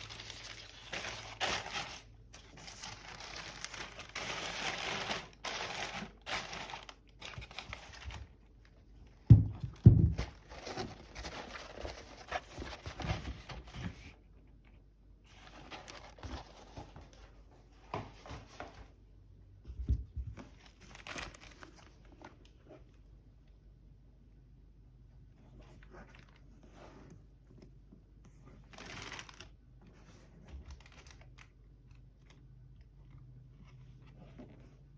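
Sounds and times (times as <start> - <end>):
packaging crinkling and rustling: 0.0 - 8.8, 9.6 - 14.2, 15.3 - 17.3, 20.3 - 22.6, 28.6 - 29.6, 30.3 - 34.2.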